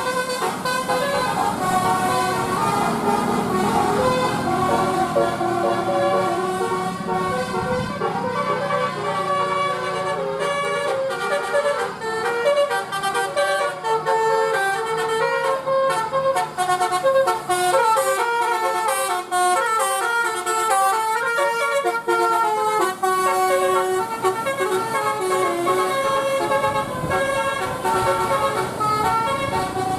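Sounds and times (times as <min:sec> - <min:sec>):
multi-tone bus horn melody: 0:00.0 - 0:29.9.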